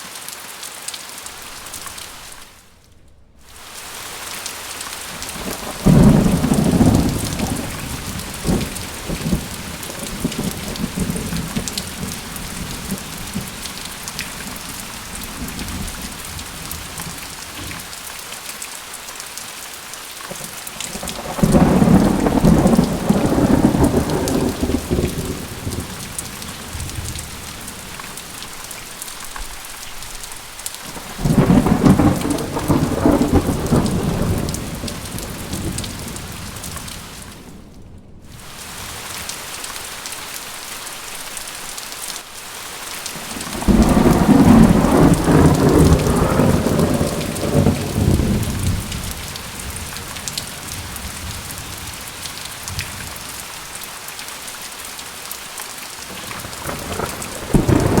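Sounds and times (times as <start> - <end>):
steady rain falling: 0.0 - 58.0
rolls of thunder: 5.0 - 17.9, 20.9 - 28.0, 30.9 - 38.3, 43.4 - 52.0, 56.1 - 58.0.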